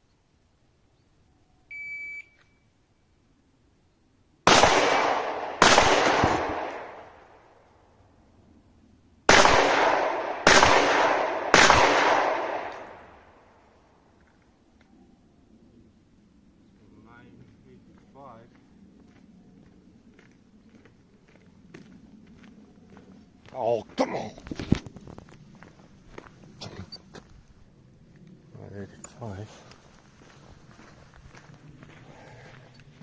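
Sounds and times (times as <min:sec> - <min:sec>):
shot timer beep: 0:01.7 - 0:02.6
pistol gunshots with echo: 0:04.5 - 0:07.4, 0:09.3 - 0:13.4.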